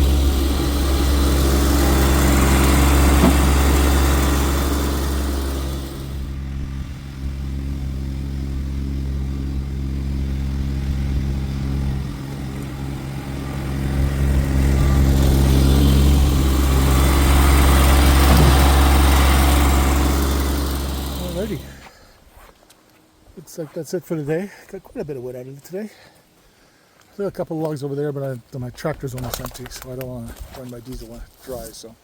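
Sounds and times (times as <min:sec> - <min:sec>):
diesel tractor engine running: 0:00.0 - 0:21.9.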